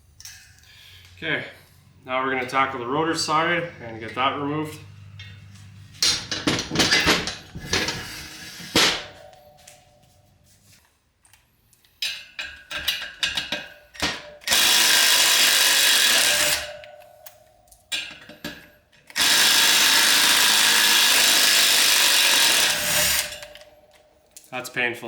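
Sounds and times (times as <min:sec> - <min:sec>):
power tool spinning bolts: 0:02.3 - 0:09.2, 0:13.3 - 0:16.9, 0:19.1 - 0:23.8
tool clicks and knocks: 0:06.0 - 0:09.8.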